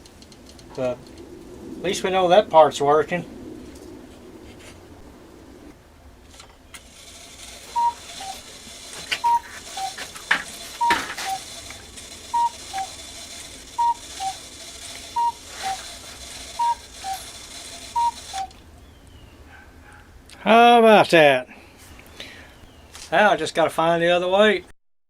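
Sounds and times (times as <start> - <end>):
clock mechanism clicking and whirring: 6.3 - 18.6
cuckoo clock calling: 6.8 - 18.6.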